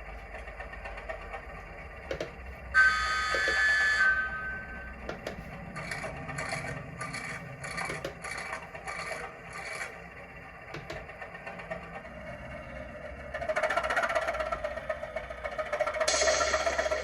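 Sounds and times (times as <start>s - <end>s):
rhythmic rasping scrape: 15.8s - 17.0s.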